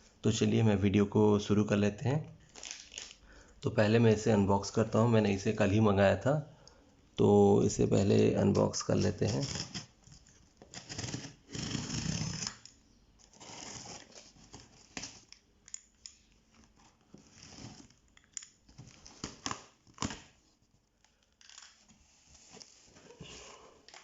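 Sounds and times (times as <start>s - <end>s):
packing tape tearing: 2.4s - 3.2s, 9.0s - 12.7s, 13.3s - 15.4s, 17.3s - 20.4s, 21.1s - 22.0s.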